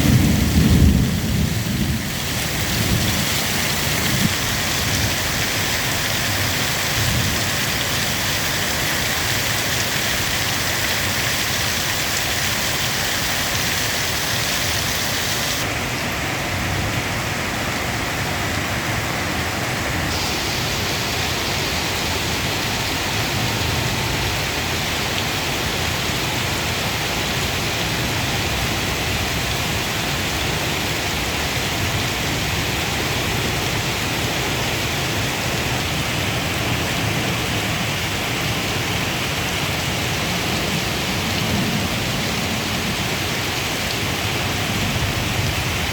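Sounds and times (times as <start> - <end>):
heavy rain pouring: 0.0 - 45.9.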